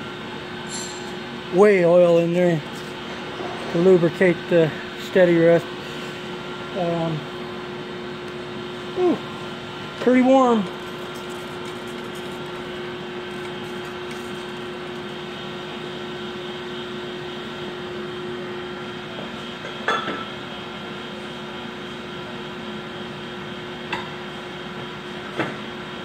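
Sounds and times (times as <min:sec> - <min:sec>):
metal lathe humming: 0:00.6 - 0:18.9
metallic clink with ring: 0:00.7 - 0:01.1.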